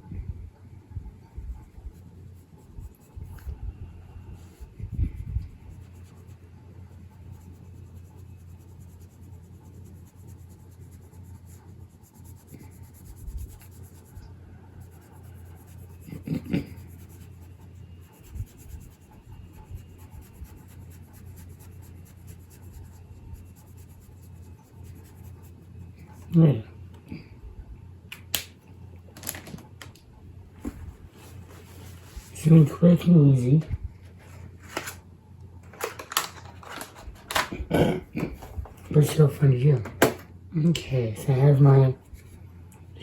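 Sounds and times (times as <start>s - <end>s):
pencil scratching on paper: 1.2s - 3.6s, 4.4s - 26.4s.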